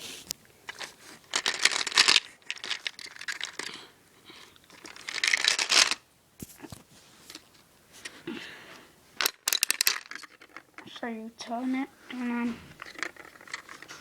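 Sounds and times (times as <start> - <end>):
toy gumball machine rattling: 0.7 - 3.7, 4.6 - 6.0, 9.2 - 10.9, 12.8 - 14.0.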